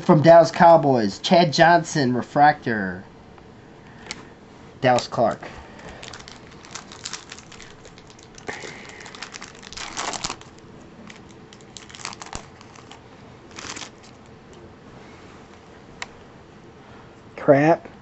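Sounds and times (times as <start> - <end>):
foil wrapper crinkling: 5.8 - 14.3.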